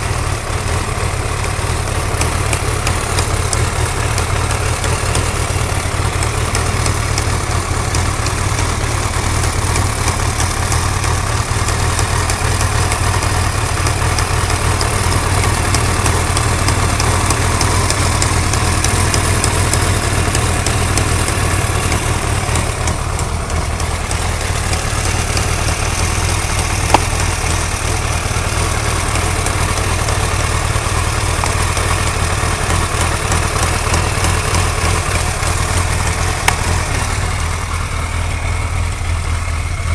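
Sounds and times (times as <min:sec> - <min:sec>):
motorcycle engine idling: 0:00.0 - 0:39.9
light rapid ticking: 0:00.4 - 0:38.5
sharp click: 0:26.8 - 0:27.3.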